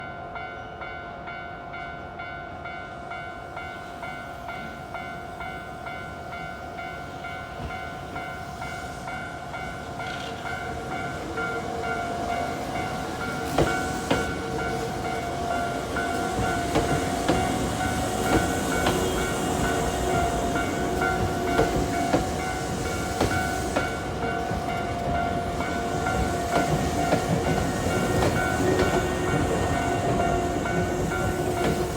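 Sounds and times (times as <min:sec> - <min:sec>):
train wheels clacking on rails: 0:06.6 - 0:31.9.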